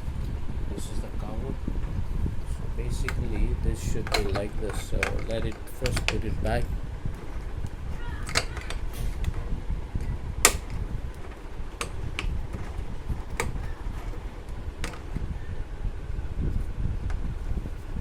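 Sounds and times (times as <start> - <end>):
steady low rumble: 0.0 - 18.0
hard plastic clicks and knocks: 3.0 - 7.5, 10.4 - 15.2.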